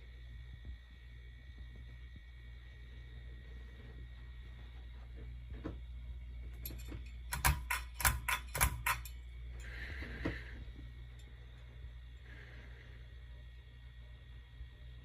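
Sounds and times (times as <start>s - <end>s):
steady low hum: 0.0s - 15.0s
sharp clicks: 7.3s - 9.2s.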